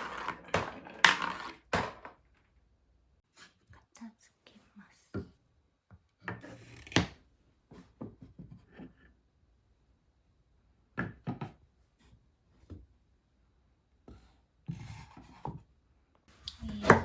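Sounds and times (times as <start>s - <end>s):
wooden pieces knocking and clattering: 0.0s - 2.5s.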